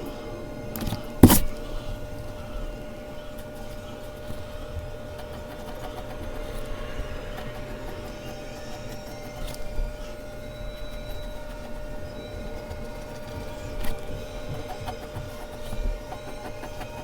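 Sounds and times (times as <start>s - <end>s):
faint hum: 0.0s - 17.0s
pencil scratching on paper: 0.2s - 17.0s
sharp knock: 0.8s - 1.6s.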